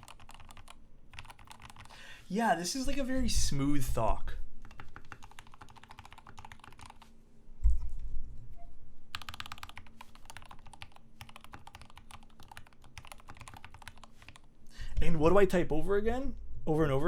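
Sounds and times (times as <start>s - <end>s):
mechanical keyboard typing: 0.0s - 1.9s, 4.6s - 7.1s, 9.1s - 14.5s.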